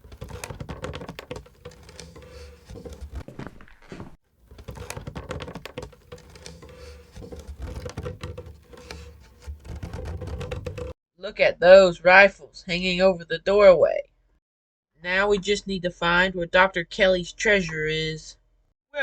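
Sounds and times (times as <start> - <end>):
rapid light clicking and tapping: 0.0 - 3.2, 4.5 - 11.0.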